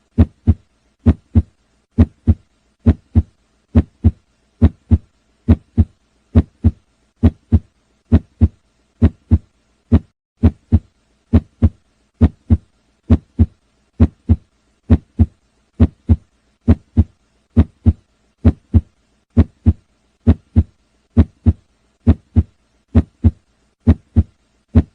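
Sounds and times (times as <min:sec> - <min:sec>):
heartbeat thumps: 0:00.1 - 0:24.9.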